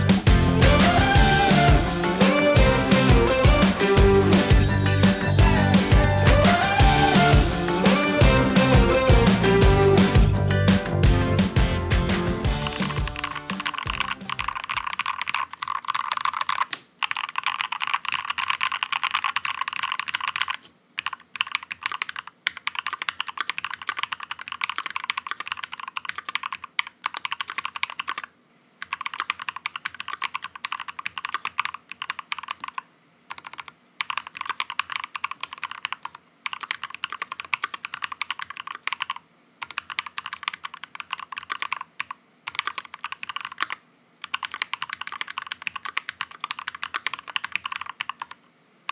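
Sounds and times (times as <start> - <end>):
mechanical keyboard typing: 12.5 - 48.9.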